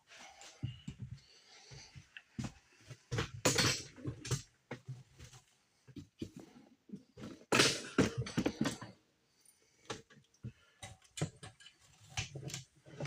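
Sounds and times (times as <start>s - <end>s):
metal parts and tools clattering: 3.4s - 4.5s.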